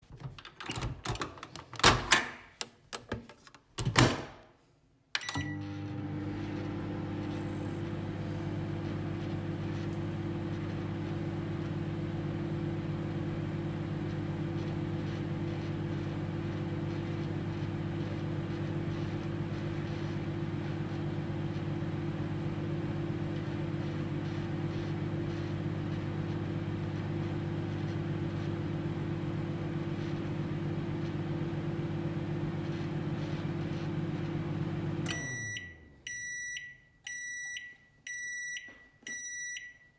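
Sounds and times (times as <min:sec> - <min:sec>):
microwave beeps: 0:05.2 - 0:06.6, 0:35.0 - 0:39.9
microwave oven humming: 0:05.2 - 0:37.8.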